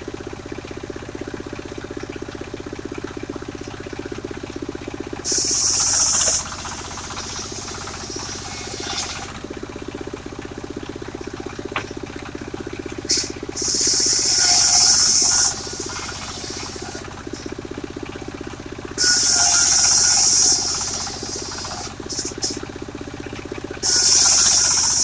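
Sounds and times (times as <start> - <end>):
sawmill engine pulsing: 0.0 - 25.0
circular saw cutting wood whine: 5.2 - 9.7, 11.1 - 17.6, 18.9 - 22.8, 23.7 - 25.0.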